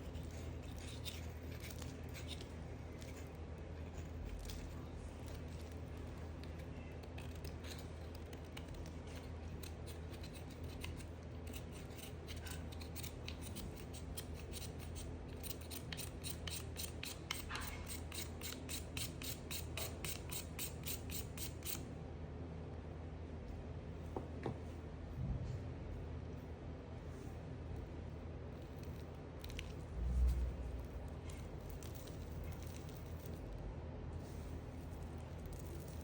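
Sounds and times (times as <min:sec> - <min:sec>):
blade cutting through soap: 0:00.0 - 0:21.9, 0:28.6 - 0:33.4, 0:34.8 - 0:36.0.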